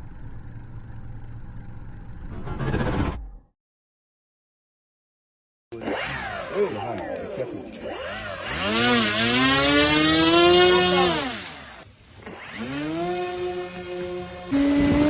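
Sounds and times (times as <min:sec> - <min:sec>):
model aircraft motor running: 0:07.8 - 0:15.0.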